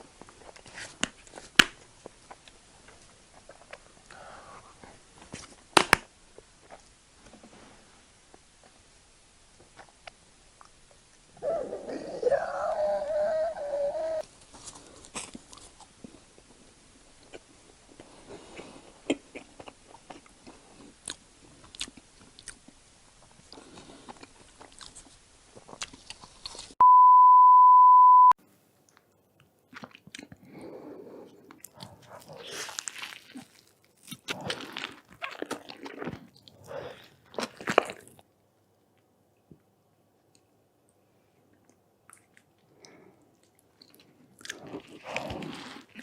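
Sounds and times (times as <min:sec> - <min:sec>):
chewing and biting food: 0:17.2 - 0:26.8, 0:29.7 - 0:30.6, 0:31.2 - 0:38.2, 0:43.4 - 0:46.0
high beep tone: 0:26.8 - 0:28.4.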